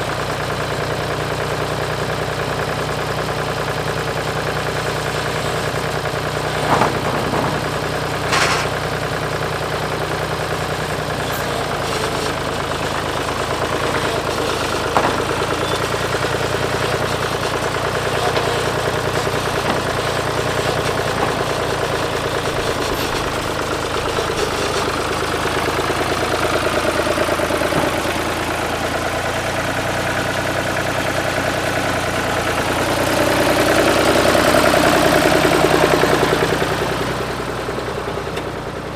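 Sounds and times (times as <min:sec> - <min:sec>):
sawmill gas engine running: 0:00.0 - 0:38.9
sharp knocks: 0:06.4 - 0:09.1, 0:14.3 - 0:25.0, 0:27.5 - 0:28.6.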